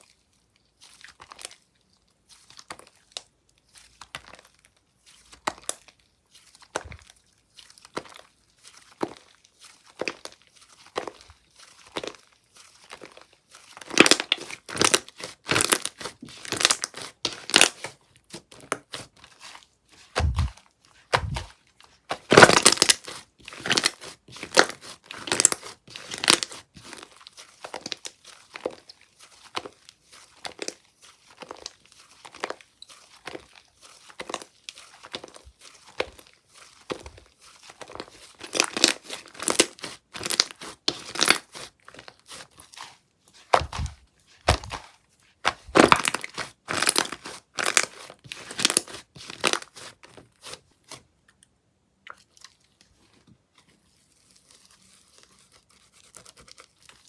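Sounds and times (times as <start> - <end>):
dull thumps: 20.2 - 21.5, 43.6 - 44.8.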